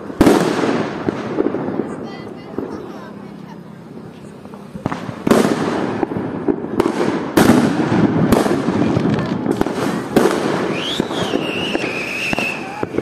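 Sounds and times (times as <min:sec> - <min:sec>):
crackling and distant bursts: 0:00.0 - 0:13.0
firecrackers banging: 0:00.0 - 0:13.0
high whistling tone: 0:10.7 - 0:12.8.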